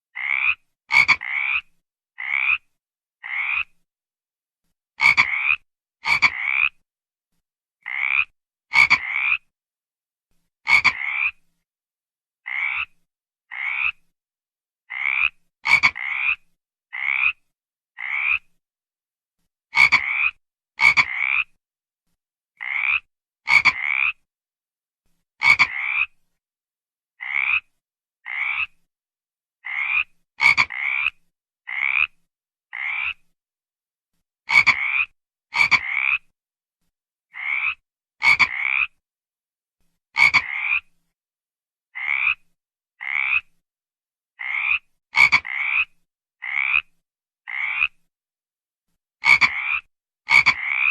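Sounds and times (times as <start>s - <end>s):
frog croaking: 0.1s - 3.7s, 5.0s - 6.8s, 7.8s - 9.5s, 10.7s - 11.4s, 12.4s - 14.0s, 14.9s - 18.5s, 19.8s - 21.6s, 22.6s - 24.2s, 25.4s - 26.2s, 27.2s - 28.8s, 29.6s - 33.2s, 34.5s - 36.3s, 37.3s - 39.0s, 40.2s - 40.9s, 41.9s - 42.4s, 43.0s - 43.5s, 44.4s - 46.9s, 47.5s - 48.0s, 49.2s - 50.9s.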